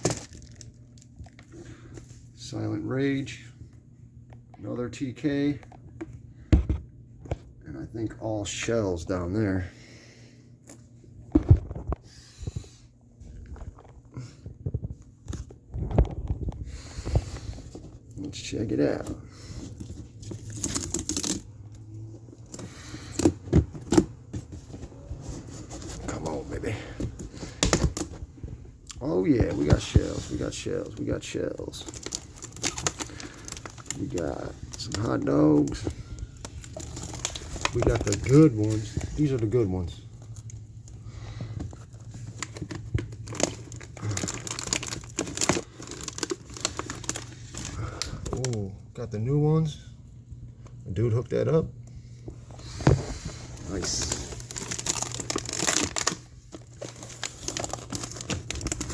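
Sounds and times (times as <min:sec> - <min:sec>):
packaging rustling and crinkling: 0:00.0 - 0:02.3, 0:10.7 - 0:48.8, 0:52.3 - 0:58.9.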